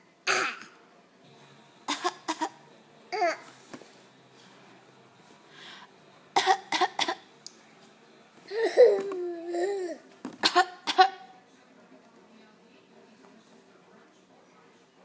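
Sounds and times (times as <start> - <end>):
person fake coughing: 6.4 - 7.2.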